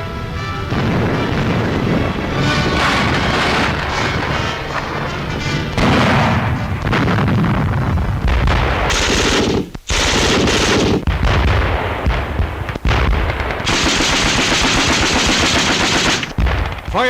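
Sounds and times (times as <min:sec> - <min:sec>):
machine-gun fire: 0:05.8 - 0:07.6, 0:08.3 - 0:17.0.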